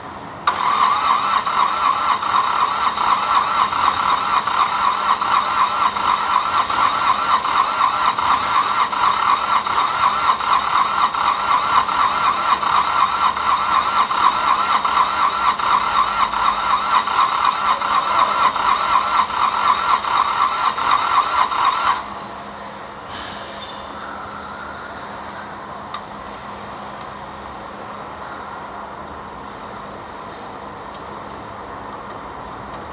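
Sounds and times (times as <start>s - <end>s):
starter motor cranking diesel engine: 0.4s - 22.2s.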